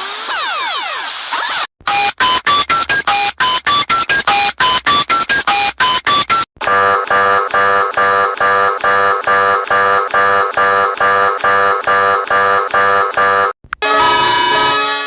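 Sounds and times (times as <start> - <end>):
rapid short beeps: 1.9 - 6.5
buzzy pulsed alarm tone: 5.5 - 15.0.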